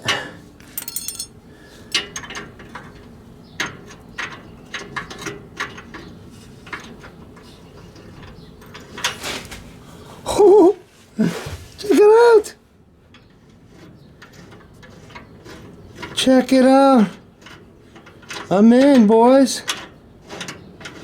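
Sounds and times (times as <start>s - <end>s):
small metal clicks and scrapes: 0.6s - 1.3s.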